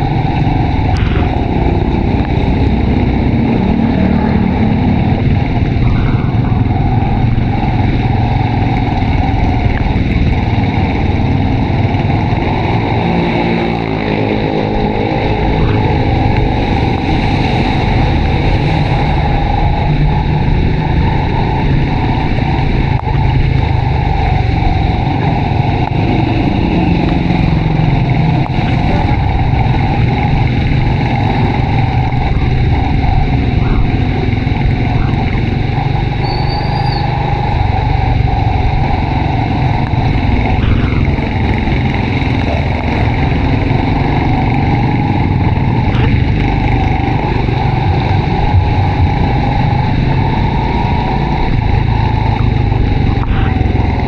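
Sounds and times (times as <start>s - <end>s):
motorcycle engine running: 0.0s - 54.0s
wind and road noise: 0.0s - 54.0s.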